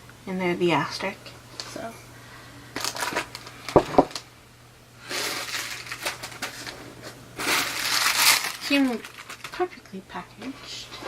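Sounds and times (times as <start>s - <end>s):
packaging rustling: 2.8s - 4.2s, 5.1s - 9.7s.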